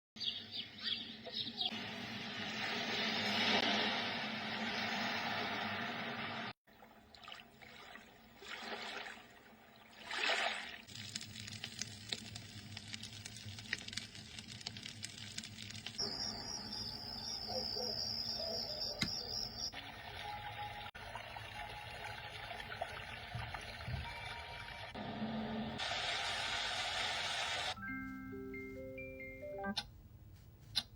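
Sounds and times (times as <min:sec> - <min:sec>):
trickling water: 0:01.7 - 0:17.4, 0:19.1 - 0:27.7
high-pitched insect trill: 0:16.0 - 0:19.7.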